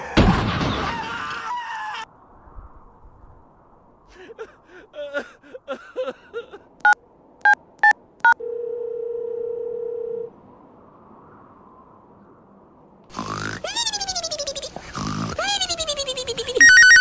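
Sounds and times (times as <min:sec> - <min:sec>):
phone-line tone: 0:07.8 - 0:10.3, 0:16.6 - 0:17.0
chattering voice-like squeaks: 0:13.1 - 0:17.0
telephone keypad beeps: 0:16.6 - 0:17.0.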